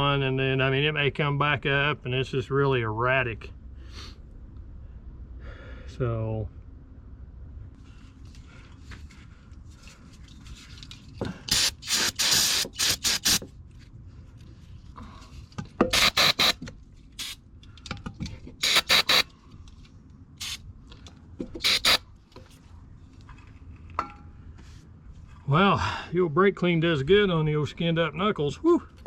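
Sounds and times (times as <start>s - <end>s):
aerosol spray hissing bursts: 11.5s - 13.4s, 15.9s - 16.6s, 18.6s - 19.3s, 20.4s - 20.6s, 21.6s - 22.0s.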